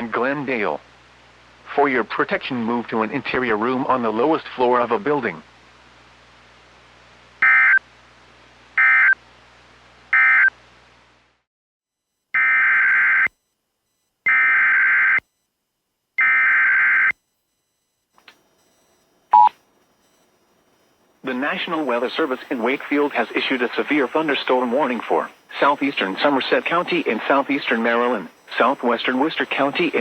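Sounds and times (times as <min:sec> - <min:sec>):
digital data bursts: 0:19.3 - 0:30.0.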